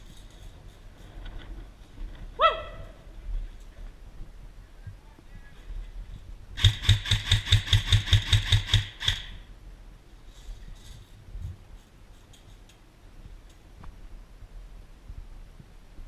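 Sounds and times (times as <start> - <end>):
airsoft rifle firing: 6.6 - 9.4.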